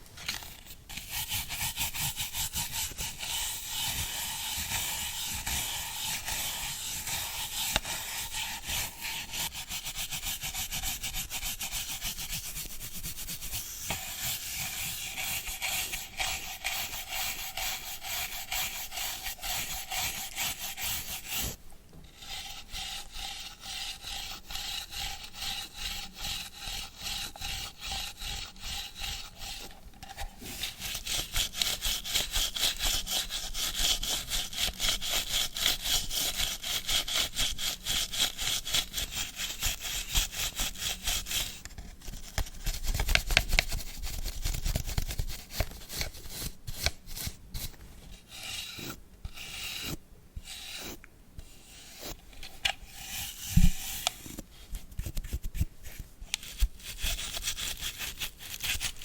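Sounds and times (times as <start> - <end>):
brush scrubbing hard surface: 0.0 - 59.0.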